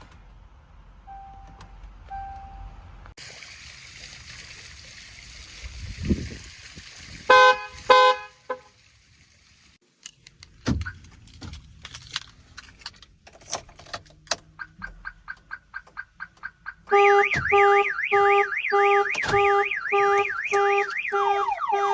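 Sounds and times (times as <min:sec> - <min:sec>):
car horn honks: 0:07.3 - 0:08.7, 0:16.9 - 0:21.9.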